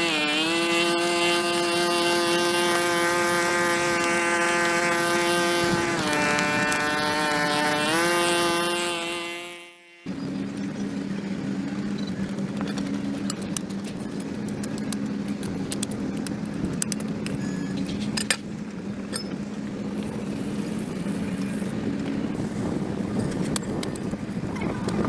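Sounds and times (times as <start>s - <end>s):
low motor hum: 0.0s - 25.0s
sharp clicks and scrapes: 12.0s - 18.5s.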